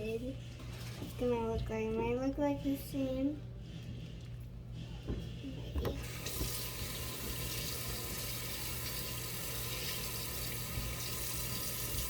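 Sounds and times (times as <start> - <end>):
water running from tap into sink: 6.0 - 12.0.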